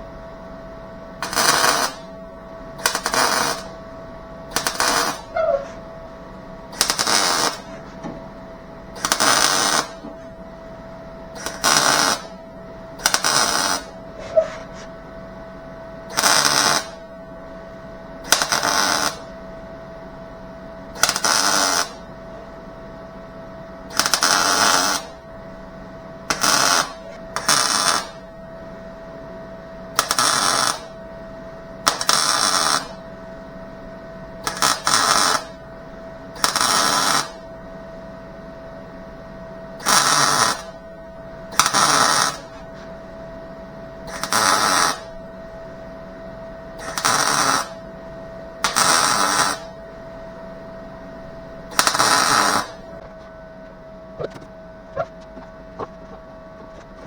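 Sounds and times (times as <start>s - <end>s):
steady hum: 0.0s - 57.0s
welder crackling: 1.2s - 2.1s, 2.8s - 3.8s, 4.5s - 10.4s, 11.4s - 12.4s, 13.0s - 15.0s, 16.1s - 17.0s, 18.2s - 19.3s, 21.0s - 22.0s, 23.9s - 25.2s, 26.3s - 28.2s, 30.0s - 30.9s, 31.8s - 33.0s, 34.4s - 35.6s, 36.4s - 37.4s, 39.8s - 40.7s, 41.6s - 42.6s, 44.1s - 45.2s, 46.8s - 47.8s, 48.6s - 49.7s, 51.7s - 53.2s, 54.2s - 57.0s.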